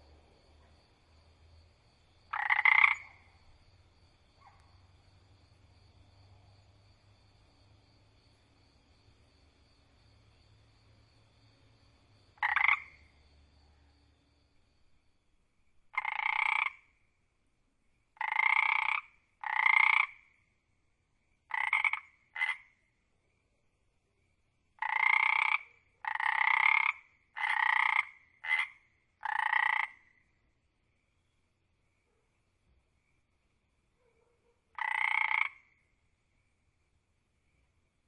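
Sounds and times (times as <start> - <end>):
frog croaking: 2.1 - 5.0, 12.3 - 13.2, 15.9 - 17.0, 18.2 - 20.5, 21.5 - 22.9, 24.8 - 30.3, 34.7 - 35.9.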